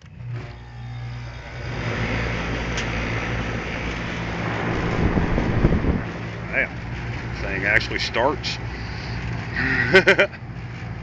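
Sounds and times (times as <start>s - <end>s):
electric hum: 0.6s - 8.5s
fan air rushing: 0.8s - 11.0s.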